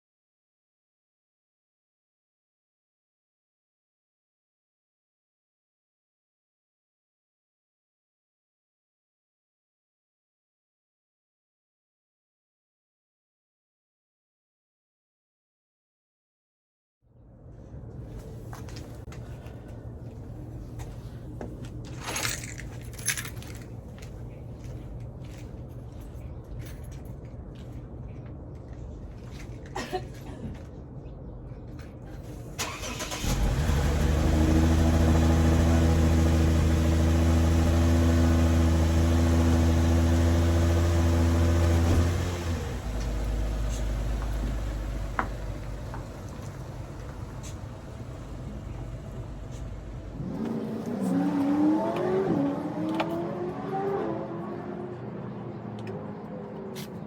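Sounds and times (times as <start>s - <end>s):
car engine running: 33.1s - 50.4s.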